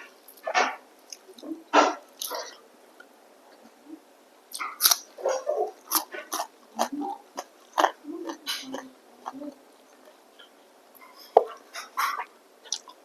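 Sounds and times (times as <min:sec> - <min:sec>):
wet chewing and smacking: 0:04.5 - 0:11.1, 0:11.8 - 0:13.0.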